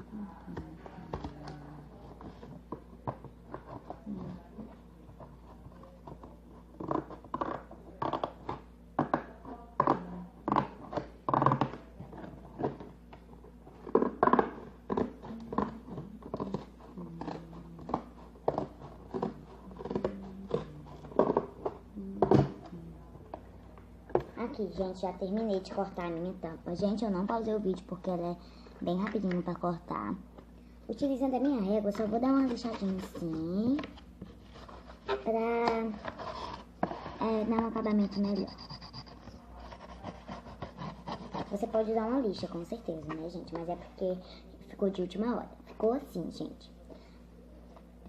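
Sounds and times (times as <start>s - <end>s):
scissors cutting cardboard: 13.9s - 21.4s, 38.1s - 41.9s.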